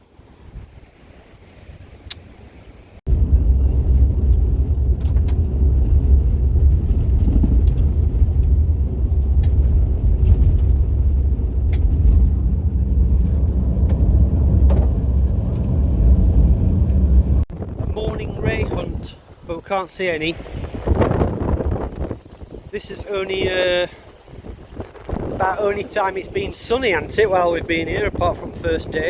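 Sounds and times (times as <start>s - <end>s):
vehicle engine rumbling: 3.1s - 19.4s.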